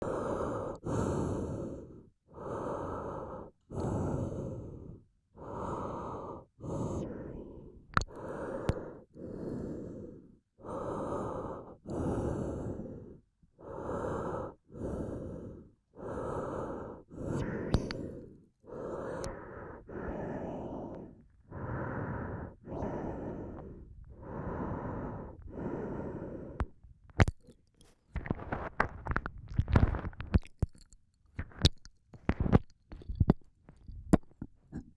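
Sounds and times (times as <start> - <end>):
person breathing: 0.0 - 28.7
mouth clicks: 17.2 - 18.2.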